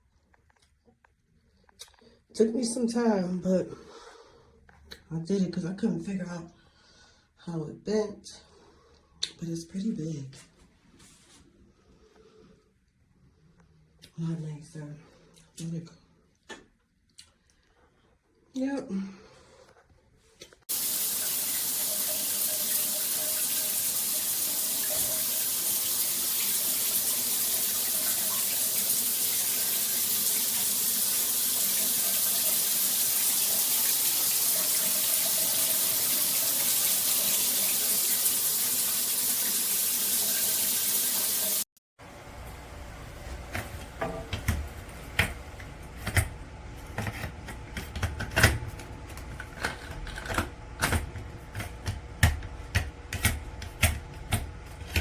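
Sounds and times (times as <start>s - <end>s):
water spraying from shower head: 20.7s - 41.7s.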